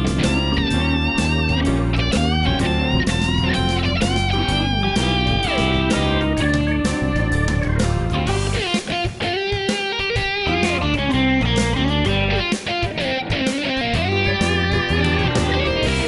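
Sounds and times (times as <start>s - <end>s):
bass line: 0.0s - 8.8s, 10.4s - 16.0s
electric guitar music: 0.0s - 16.0s.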